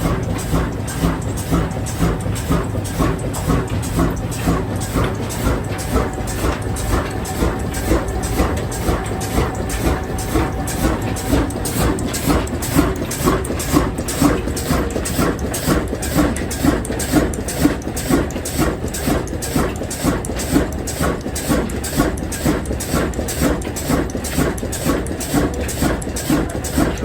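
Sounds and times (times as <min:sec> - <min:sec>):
diesel engine running: 0:00.0 - 0:20.4.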